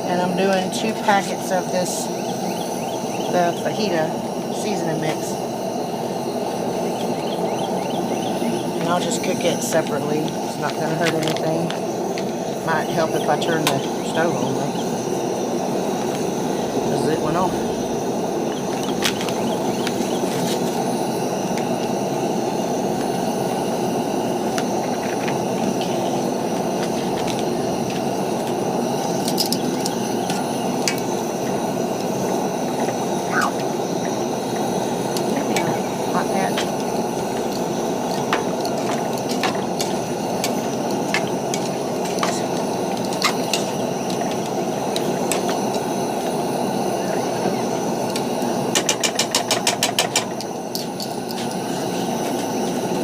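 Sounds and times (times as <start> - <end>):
camp stove burner running: 0.0 - 53.0
food sizzling in pans: 3.5 - 53.0
fat popping and crackling: 9.8 - 13.9, 18.0 - 20.8.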